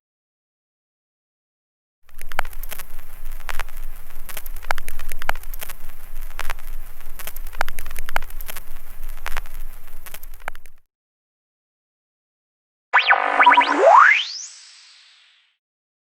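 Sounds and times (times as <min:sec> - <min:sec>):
low steady hum: 0:02.1 - 0:10.8
radio static crackling: 0:02.1 - 0:10.8
sharp pops and clicks: 0:02.1 - 0:10.9.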